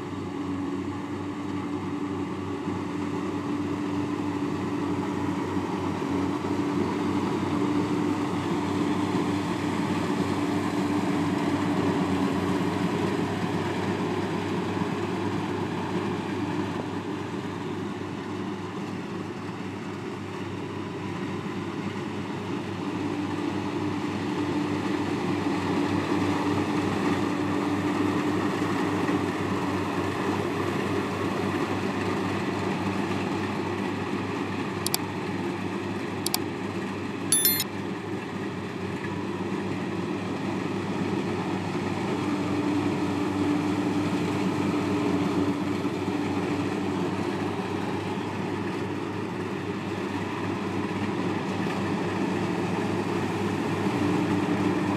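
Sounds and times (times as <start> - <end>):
farm machinery engine droning: 39.8 - 54.9.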